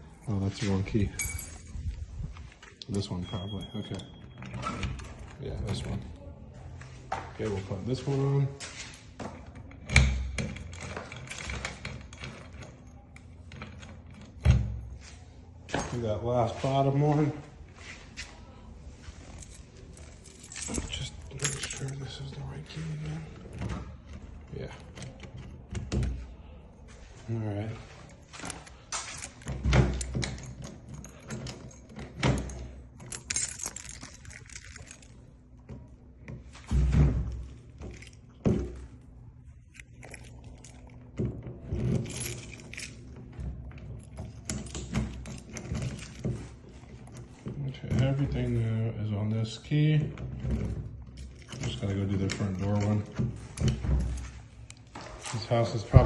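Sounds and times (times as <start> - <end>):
metal keys jangling: 0.1 - 2.0, 19.3 - 22.7, 28.3 - 35.4, 39.6 - 41.1, 41.8 - 47.2
metal lock and key clicks: 28.4 - 35.2.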